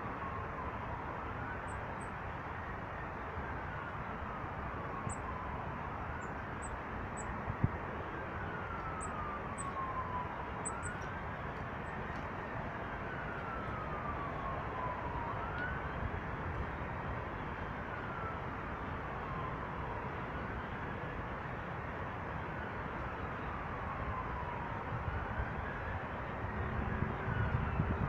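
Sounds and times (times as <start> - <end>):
faint siren wailing: 0.0 - 28.0
outdoor background noise: 0.0 - 28.0.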